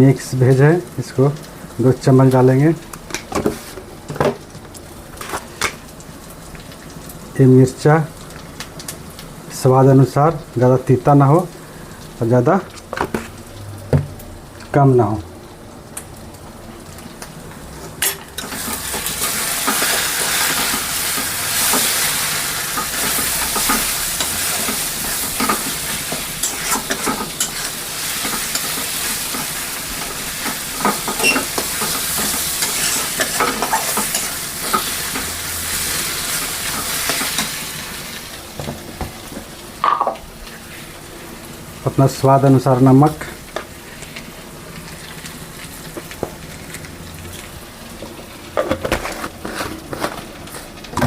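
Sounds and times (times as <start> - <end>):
spices sizzling in oil: 0.0 - 51.0
spoon scraping a pan: 18.1 - 29.6, 30.4 - 35.3.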